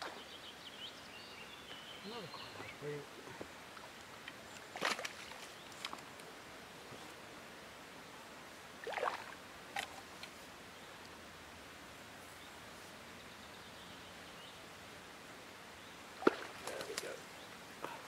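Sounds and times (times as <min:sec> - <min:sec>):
faint steady background noise: 0:00.0 - 0:18.0
fish splashing in water: 0:04.7 - 0:05.5, 0:08.8 - 0:10.0, 0:16.2 - 0:17.1.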